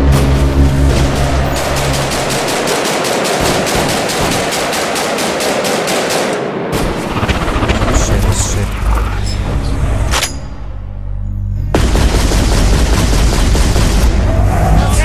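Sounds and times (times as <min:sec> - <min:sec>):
music: 0:00.0 - 0:03.8, 0:09.2 - 0:15.0
rapid sharp bangs: 0:00.0 - 0:08.7, 0:11.8 - 0:14.5.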